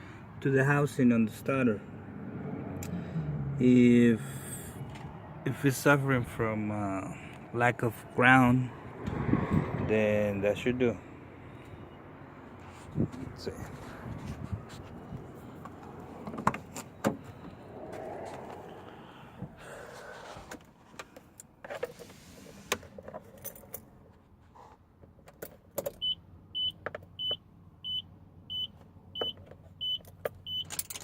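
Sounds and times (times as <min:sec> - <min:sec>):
keys jangling: 0:30.6 - 0:31.0.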